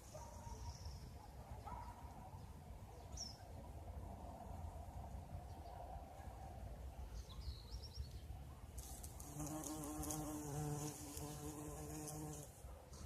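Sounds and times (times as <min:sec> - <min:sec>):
bumblebee buzzing in flight: 0:09.2 - 0:12.5.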